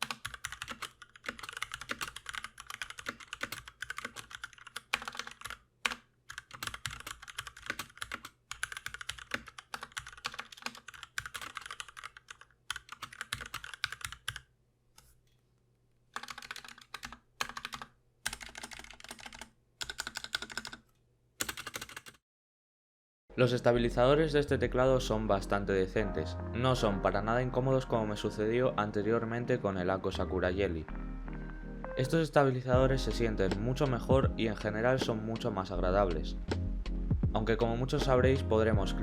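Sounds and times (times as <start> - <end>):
mechanical keyboard typing: 0.0 - 14.5, 16.2 - 22.2.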